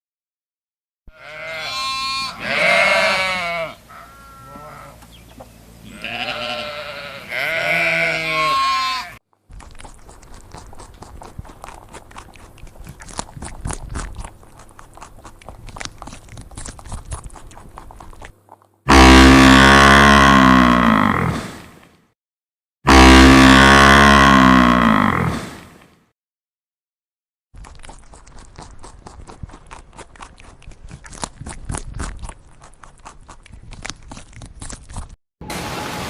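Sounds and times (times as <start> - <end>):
goat bleating: 1.1 - 5.0, 5.8 - 9.2
crackling and crunching: 9.4 - 18.9, 27.6 - 35.2.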